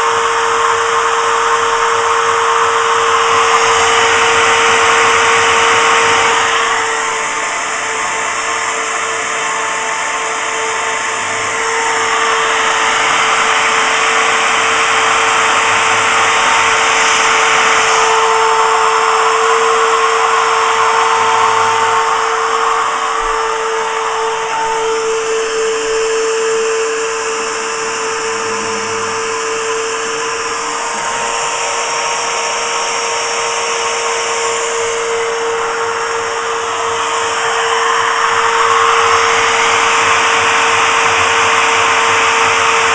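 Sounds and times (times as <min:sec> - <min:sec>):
spindle whining: 0:00.0 - 0:32.9
cutter milling aluminium: 0:00.0 - 0:42.9.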